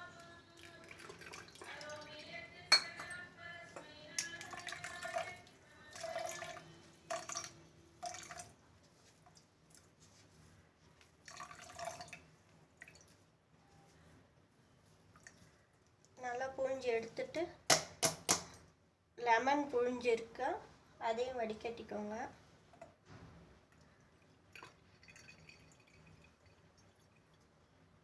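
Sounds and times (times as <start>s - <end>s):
liquid dripping and splashing: 0.6s - 2.0s, 23.7s - 27.5s
utensil clinking on glass: 2.7s - 5.4s.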